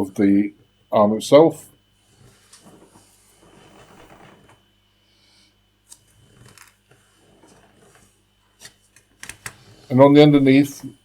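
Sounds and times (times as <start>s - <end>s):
plastic parts rustling and clicking: 5.9s - 8.0s.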